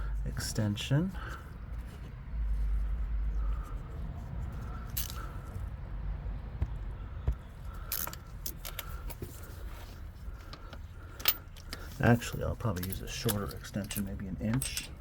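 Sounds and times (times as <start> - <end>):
metal hand tools clinking: 11.1 - 15.0.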